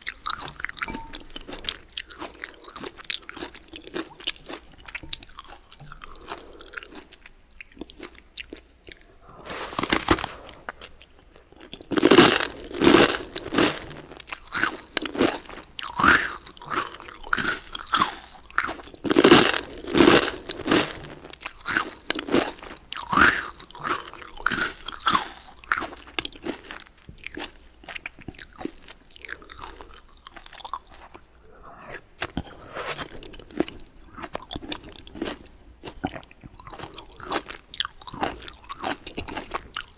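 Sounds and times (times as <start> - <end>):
crisp chewing: 5.3 - 17.0
crunchy bite of bread: 9.0 - 11.0.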